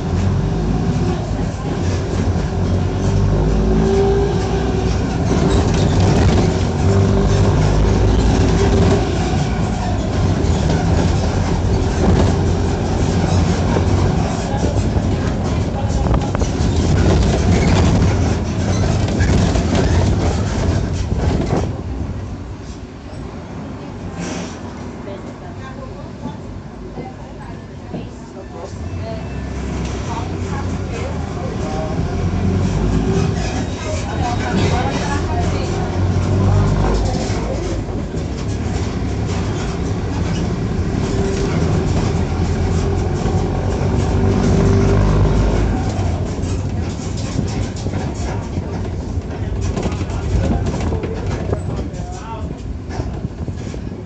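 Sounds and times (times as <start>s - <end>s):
rattling noise: 0.0s - 21.8s, 30.2s - 54.0s
bus diesel engine rumbling: 0.0s - 54.0s.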